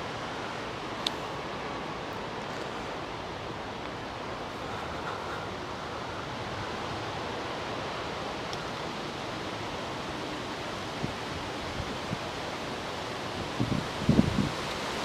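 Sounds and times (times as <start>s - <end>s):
rushing water: 0.0s - 15.0s
wind: 0.0s - 15.0s.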